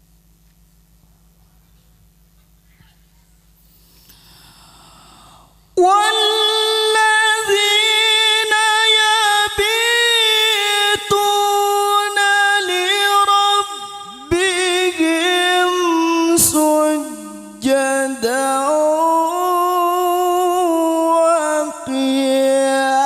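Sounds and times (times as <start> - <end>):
soft intake of breath: 3.6 - 5.8
person reciting melodically: 5.8 - 23.0.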